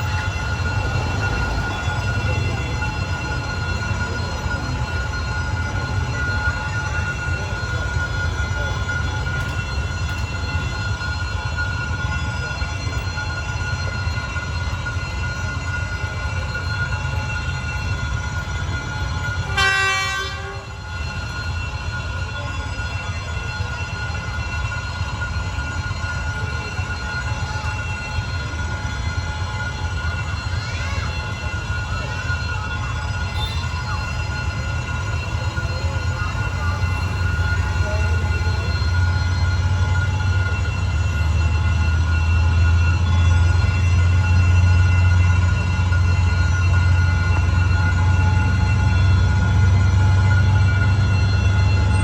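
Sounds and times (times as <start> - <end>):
high squeal of train: 0.0 - 52.0
train wagons rumbling: 0.0 - 52.0
train horn blast: 19.4 - 20.8.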